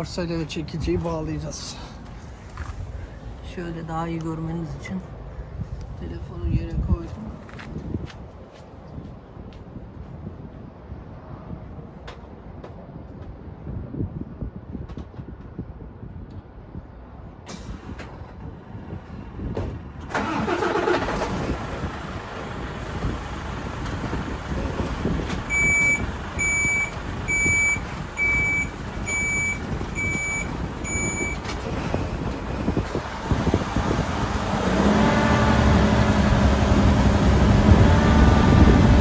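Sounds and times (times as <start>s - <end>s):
diesel truck engine running: 20.1s - 39.0s
reversing alarm beeping: 25.5s - 31.5s.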